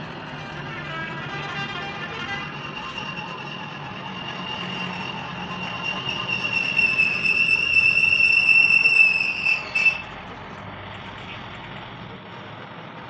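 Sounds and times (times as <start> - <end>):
high-pitched whistling tone: 2.4 - 10.1.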